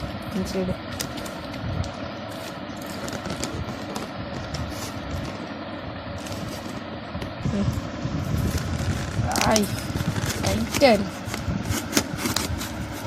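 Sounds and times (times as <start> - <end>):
packaging rustling and scraping: 0.9 - 5.5, 6.2 - 6.9, 8.4 - 13.0.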